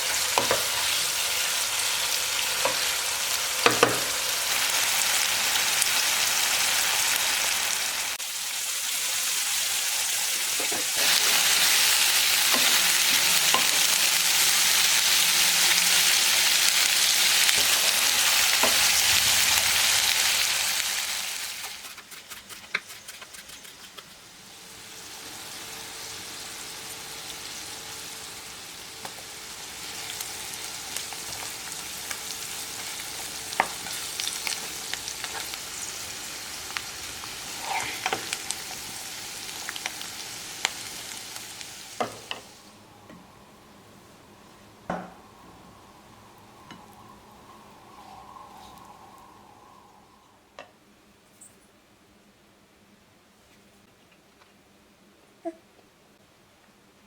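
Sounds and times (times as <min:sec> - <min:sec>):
food sizzling in hot oil: 0:00.0 - 0:22.4, 0:24.4 - 0:42.7
spoon scraping pan: 0:37.5 - 0:38.4.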